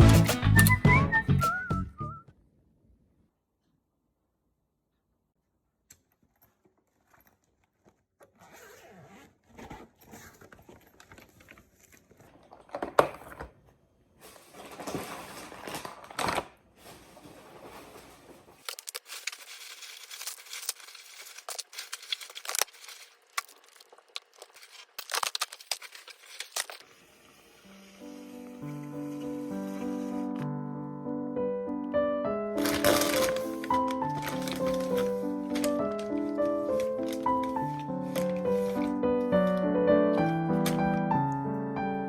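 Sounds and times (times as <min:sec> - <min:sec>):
packaging tearing and crinkling: 0:14.4 - 0:26.8, 0:32.6 - 0:41.0.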